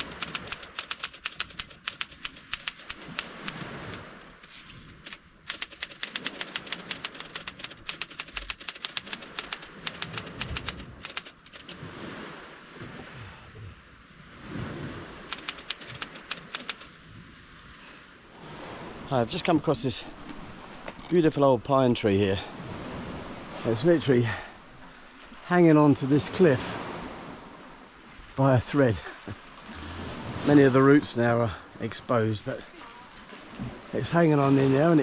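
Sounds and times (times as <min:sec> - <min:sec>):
typewriter keys clacking: 0:00.0 - 0:03.3, 0:05.0 - 0:11.8, 0:15.3 - 0:16.9.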